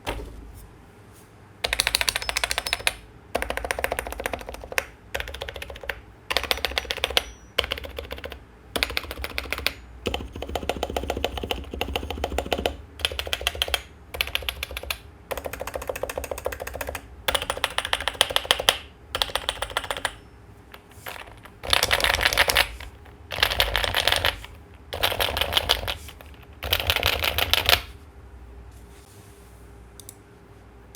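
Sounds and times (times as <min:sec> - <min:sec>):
metal keycaps ringing ping: 0:01.7 - 0:03.0, 0:06.7 - 0:07.6.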